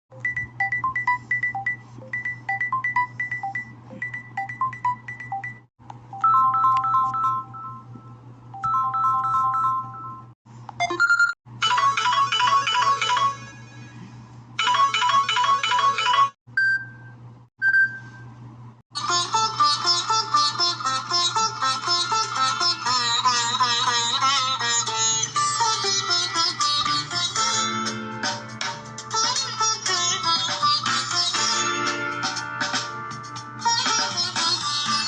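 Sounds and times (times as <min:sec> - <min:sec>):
phone ringtones: 0:00.2 - 0:07.9, 0:08.6 - 0:13.6, 0:14.6 - 0:16.9.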